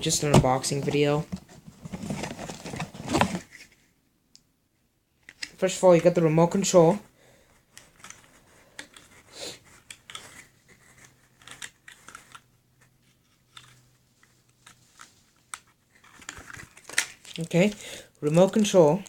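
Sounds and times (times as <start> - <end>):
packaging rustling: 0.6 - 3.7, 7.8 - 19.0.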